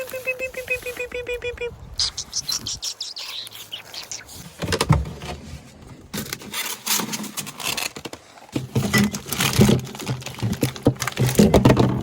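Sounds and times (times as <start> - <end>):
objects scraping and knocking: 4.4 - 12.0.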